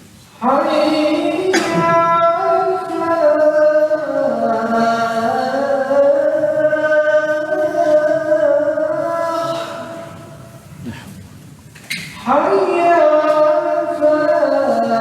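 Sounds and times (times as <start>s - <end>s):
person chanting: 0.4s - 11.0s, 12.2s - 15.0s.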